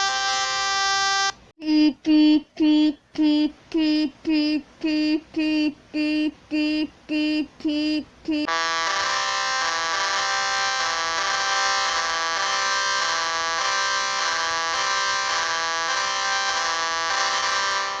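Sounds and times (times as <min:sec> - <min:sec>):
buzzy two-pitch alarm tone: 0:00.0 - 0:01.4, 0:08.5 - 0:18.0.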